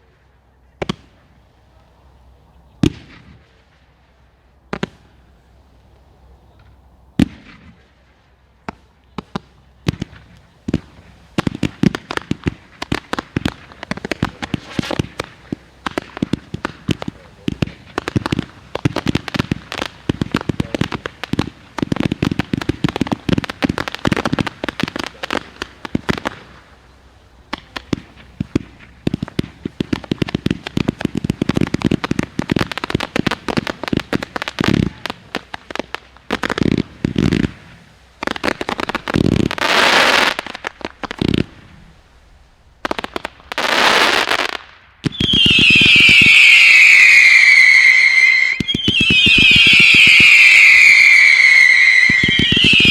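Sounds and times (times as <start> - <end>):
firework crackling: 0.0 - 52.9
firework hissing bursts: 9.9 - 52.9
firework whistle gliding down: 45.1 - 52.9.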